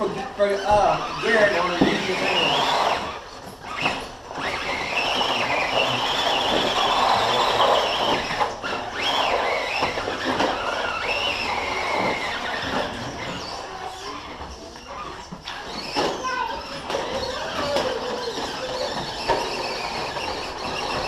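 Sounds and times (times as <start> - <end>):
off-road vehicle engines revving: 0.0 - 14.4.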